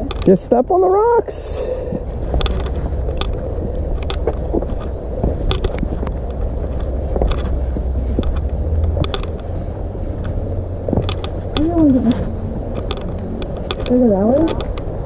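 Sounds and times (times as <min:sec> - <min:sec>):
wind rumbling on microphone: 0:00.0 - 0:15.0
footsteps on rock and mud: 0:01.9 - 0:13.7.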